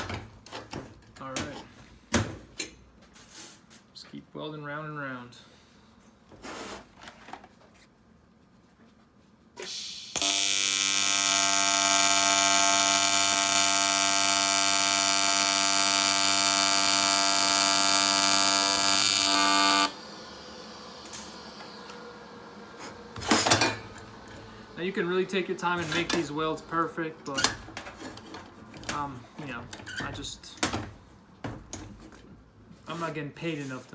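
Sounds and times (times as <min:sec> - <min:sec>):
welding arc crackle and buzz: 0:09.6 - 0:26.9.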